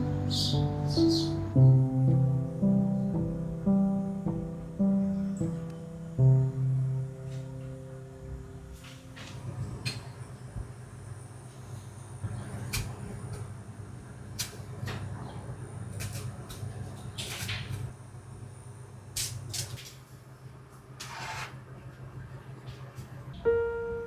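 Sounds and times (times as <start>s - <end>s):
steady low hum: 0.0s - 10.6s.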